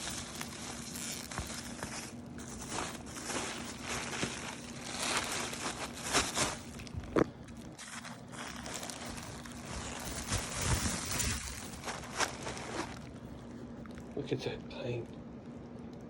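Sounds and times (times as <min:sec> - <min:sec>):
plastic wrap crinkling: 0:00.0 - 0:16.0.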